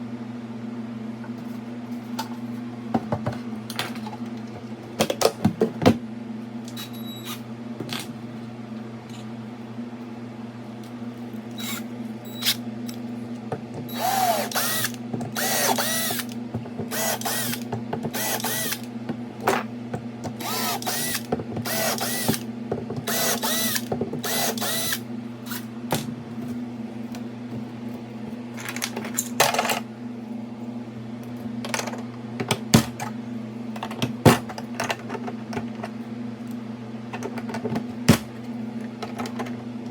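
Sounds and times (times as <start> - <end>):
steady low hum: 0.0 - 39.9
power drill bursts: 13.9 - 16.3, 16.9 - 17.6, 18.2 - 18.8, 20.4 - 22.4, 23.1 - 25.0.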